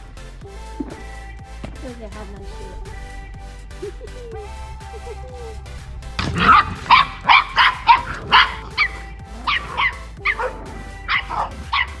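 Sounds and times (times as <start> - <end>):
dog barking in high yaps: 6.2 - 8.9.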